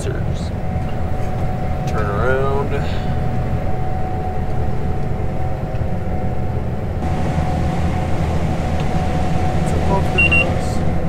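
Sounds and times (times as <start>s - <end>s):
combine harvester engine rumble: 0.0s - 11.0s
mechanical whine: 0.0s - 11.0s.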